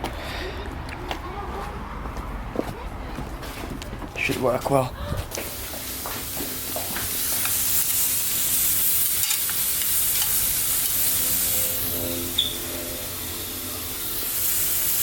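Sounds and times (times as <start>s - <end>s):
steak sizzling in a pan: 5.4s - 15.0s.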